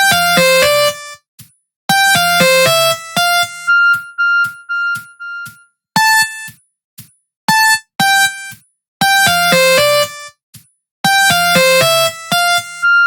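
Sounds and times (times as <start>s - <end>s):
polyphonic ringtone melody: 2.0s - 6.6s, 11.2s - 13.0s.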